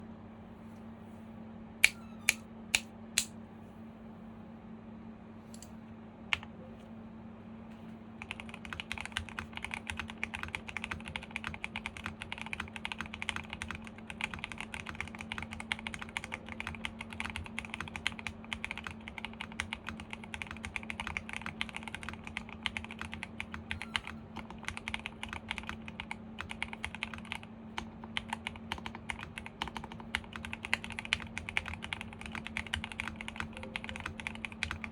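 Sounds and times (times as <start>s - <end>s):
fast mechanical keyboard typing: 8.2s - 34.9s.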